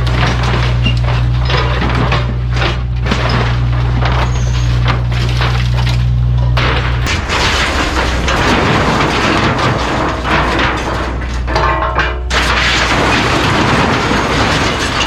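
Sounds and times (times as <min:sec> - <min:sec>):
debris crashing and crunching: 0:00.0 - 0:15.0
excavator engine running: 0:00.0 - 0:15.0
metallic screech: 0:04.2 - 0:04.8.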